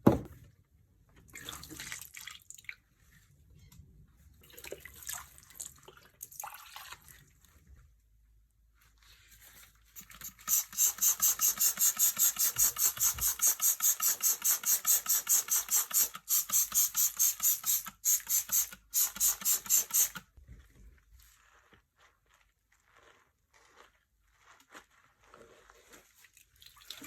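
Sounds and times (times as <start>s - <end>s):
scrubbing through floor foam: 20.6s - 26.6s.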